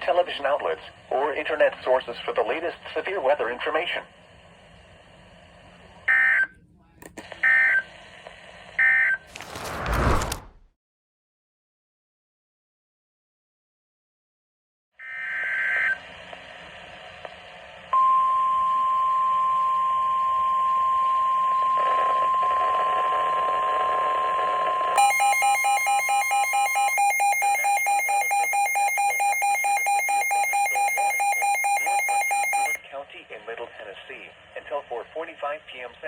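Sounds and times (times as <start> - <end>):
radio alarm beeping: 7.4 - 7.9, 8.8 - 9.2, 18.0 - 32.8
steady attention tone: 18.0 - 32.8.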